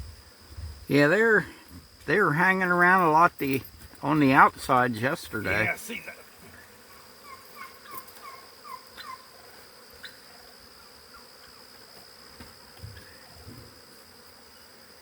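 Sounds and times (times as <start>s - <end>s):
insect trilling: 0.0s - 11.8s.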